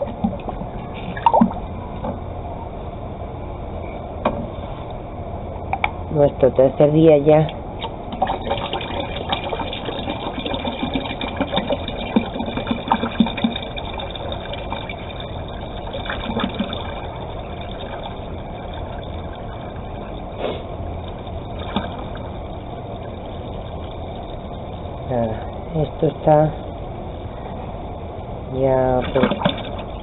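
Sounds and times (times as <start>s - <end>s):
water splashing into container: 7.8s - 20.4s, 21.0s - 23.8s, 28.8s - 30.0s.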